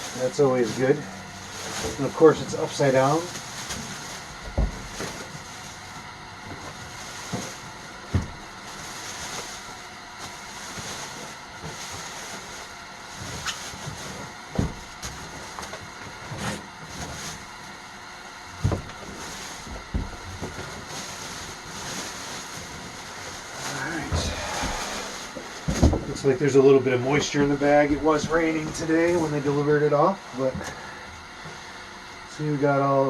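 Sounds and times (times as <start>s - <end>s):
dull thumps of box handling: 3.2s - 5.4s, 6.4s - 9.4s, 13.2s - 17.2s, 18.5s - 20.9s, 24.0s - 26.3s.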